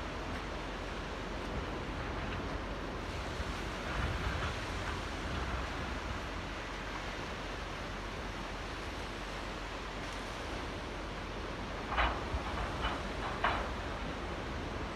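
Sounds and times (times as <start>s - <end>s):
small waves lapping at shore: 2.9s - 13.2s.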